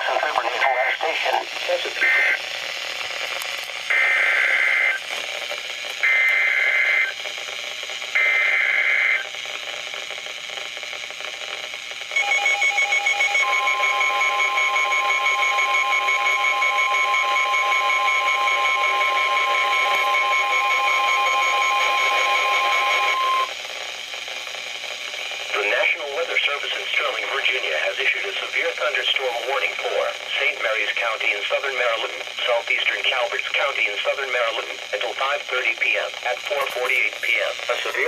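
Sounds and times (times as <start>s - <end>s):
rapid pulsing beeps: 0.6s - 2.9s, 12.0s - 23.6s
steady warning alarm tone: 1.8s - 2.5s, 3.8s - 9.4s, 11.8s - 27.9s
warbling digital data tones: 12.2s - 23.5s.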